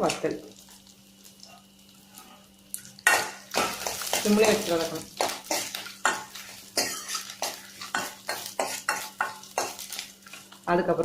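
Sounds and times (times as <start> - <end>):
faint sizzle: 0.0 - 11.0
spatula scraping a pan: 3.0 - 10.6.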